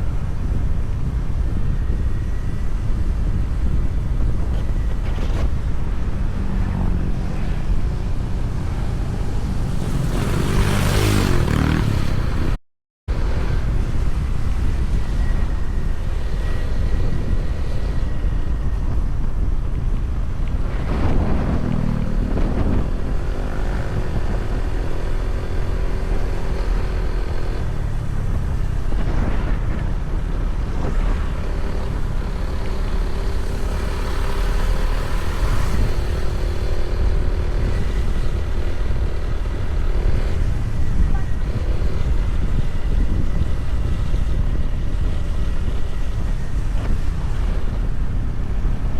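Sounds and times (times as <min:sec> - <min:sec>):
wind on microphone: 0:00.0 - 0:48.9
vehicle engine running: 0:08.3 - 0:12.6, 0:29.0 - 0:48.1.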